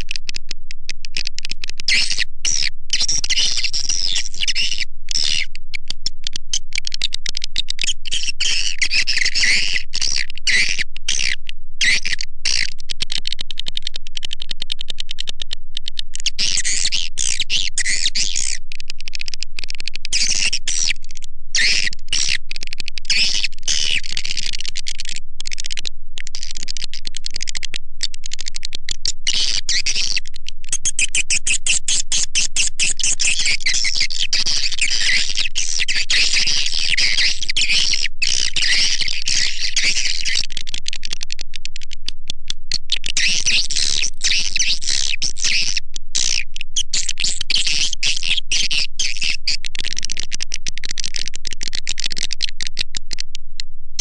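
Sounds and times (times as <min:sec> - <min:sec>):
swiftlet chirping and twittering: 0:29.0 - 0:35.4.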